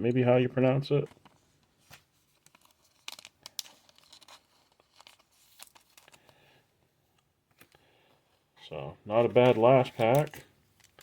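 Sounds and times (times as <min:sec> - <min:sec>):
trading cards clicking and rustling: 0:01.1 - 0:06.4, 0:09.2 - 0:11.0.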